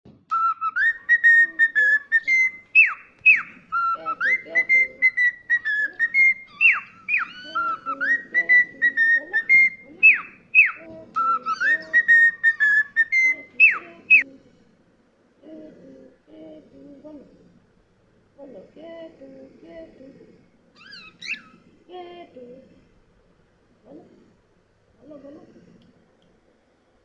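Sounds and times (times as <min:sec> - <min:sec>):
cockatiel whistling a tune: 0:00.3 - 0:14.2, 0:20.8 - 0:21.5.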